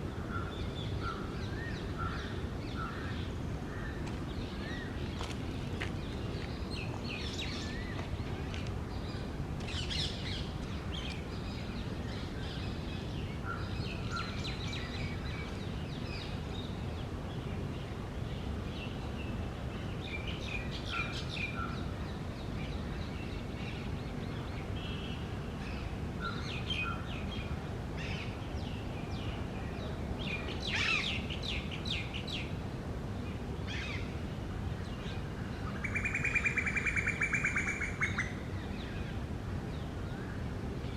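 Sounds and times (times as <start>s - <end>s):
birds calling and chirping: 34.9s - 39.2s.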